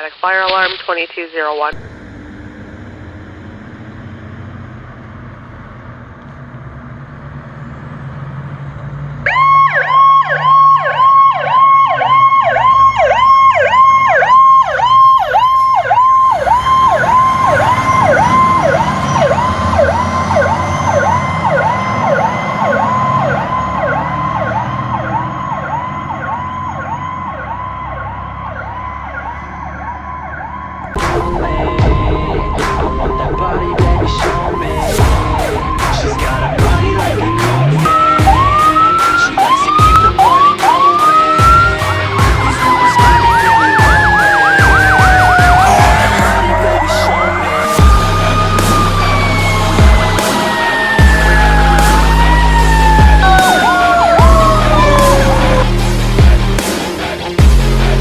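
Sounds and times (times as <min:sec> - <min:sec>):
diesel engine running: 0:01.7 - 0:58.0
electronic siren yelping: 0:09.2 - 0:58.0
siren winding up: 0:09.2 - 0:58.0
loud horn blasts: 0:33.8 - 0:56.8.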